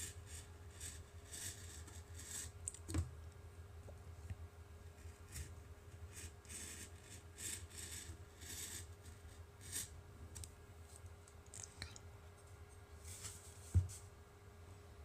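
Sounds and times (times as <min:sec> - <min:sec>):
blade scraping cardboard: 0:06.2 - 0:08.9.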